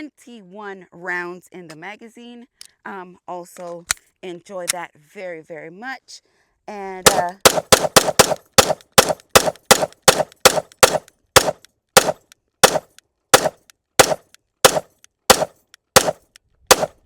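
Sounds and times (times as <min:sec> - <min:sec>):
pistol shots: 0:07.1 - 0:17.0.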